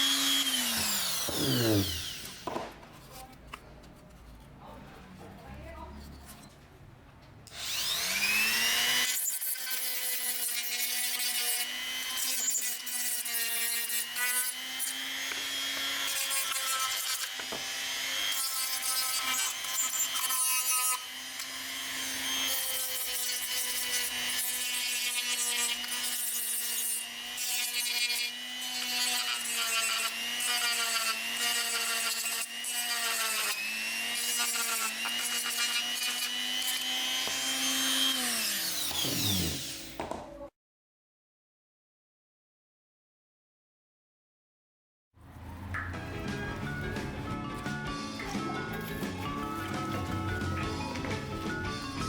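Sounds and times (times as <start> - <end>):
power tool motor whining: 0.0 - 2.5, 7.5 - 40.0, 46.0 - 52.0
gritty rubbing noise: 2.7 - 6.8, 45.2 - 52.0.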